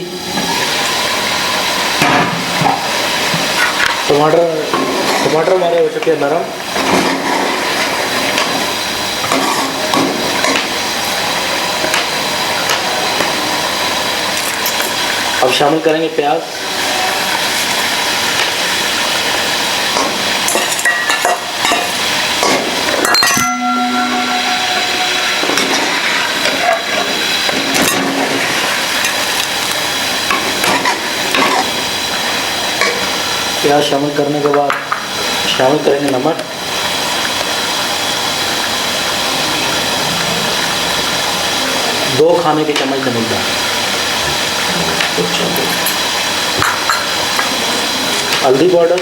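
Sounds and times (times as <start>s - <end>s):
food sizzling in a pot: 0.0s - 49.0s.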